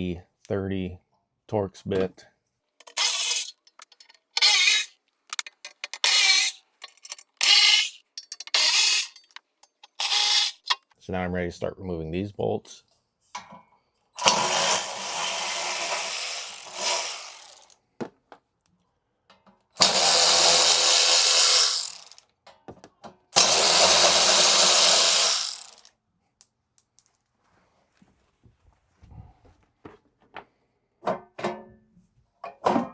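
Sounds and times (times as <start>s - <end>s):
power drill running: 2.8s - 3.6s, 4.4s - 6.6s, 7.4s - 9.3s, 9.9s - 10.7s, 14.2s - 17.8s, 19.8s - 22.2s, 23.4s - 25.9s.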